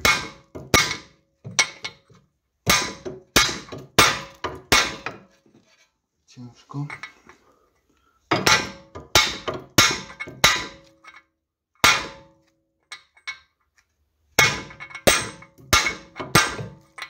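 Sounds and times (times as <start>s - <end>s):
hammer striking steel: 0.0s - 2.0s, 2.7s - 5.2s, 8.3s - 10.9s, 11.8s - 12.4s, 14.4s - 17.0s.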